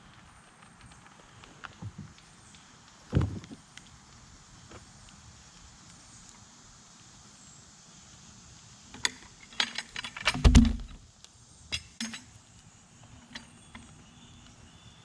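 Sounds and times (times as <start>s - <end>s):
metal clinks and knocks: 9.0s - 11.0s, 11.7s - 12.3s
heavy thump: 10.4s - 11.0s.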